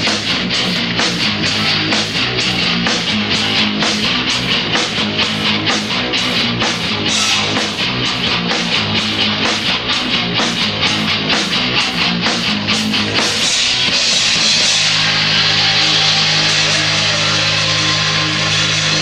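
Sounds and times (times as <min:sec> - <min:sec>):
drum kit beat: 0:00.0 - 0:19.0
electric guitar strumming: 0:00.0 - 0:19.0.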